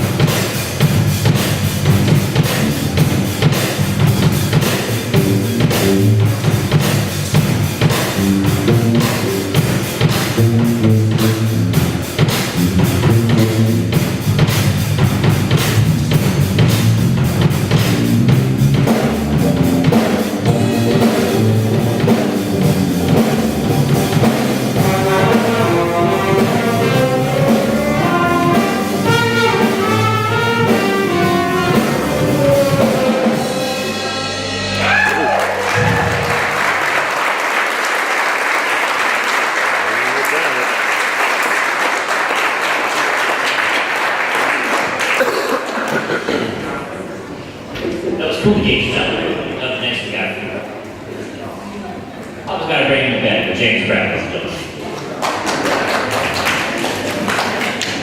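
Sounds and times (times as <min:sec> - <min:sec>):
bass: 0:00.0 - 0:37.1
drum kit beat: 0:00.0 - 0:37.1
guitar: 0:18.7 - 0:25.4
brass horn lines: 0:24.1 - 0:35.1.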